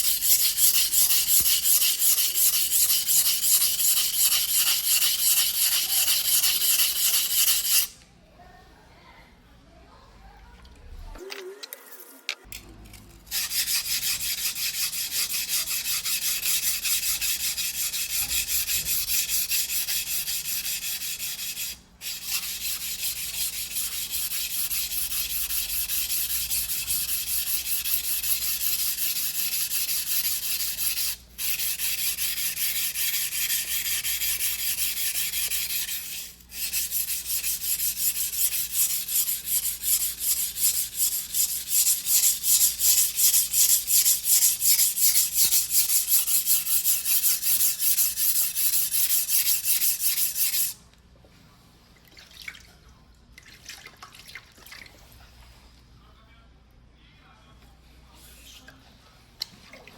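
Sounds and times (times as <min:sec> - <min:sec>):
blade scraping on whetstone: 0:00.0 - 0:07.9, 0:13.3 - 0:50.8.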